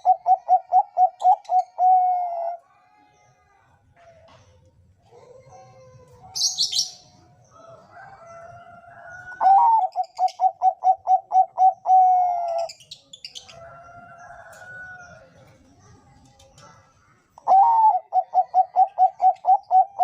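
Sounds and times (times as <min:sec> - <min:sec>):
distant doves cooing: 0:00.0 - 0:02.6, 0:06.3 - 0:12.8, 0:17.4 - 0:20.0
dove cooing: 0:00.0 - 0:02.6, 0:07.6 - 0:12.8, 0:17.4 - 0:20.0.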